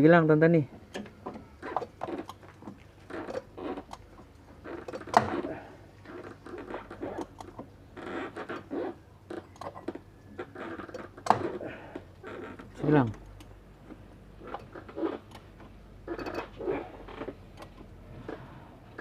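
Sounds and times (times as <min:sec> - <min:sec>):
hand tools scraping and clicking: 0:00.8 - 0:13.5.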